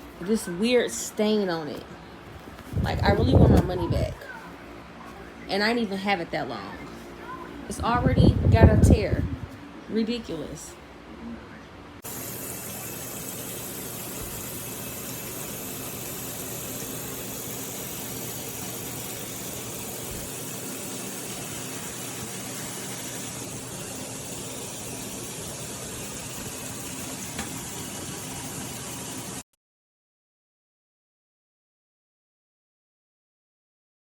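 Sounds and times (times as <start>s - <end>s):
hiss-like background noise: 12.0s - 29.4s.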